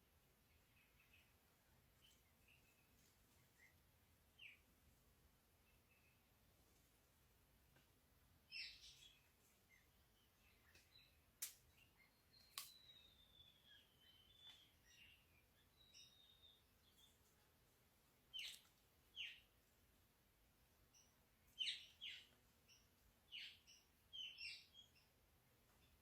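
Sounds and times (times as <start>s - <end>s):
faint background hiss: 0.0s - 26.0s
birds chirping: 8.5s - 17.4s, 18.2s - 19.6s, 20.8s - 26.0s.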